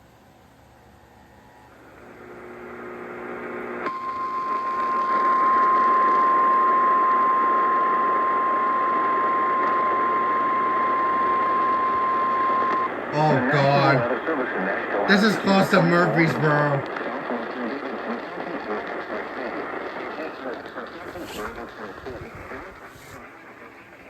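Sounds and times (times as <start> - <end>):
radio static hiss: 1.7 - 24.0
steady warning alarm tone: 3.9 - 14.0.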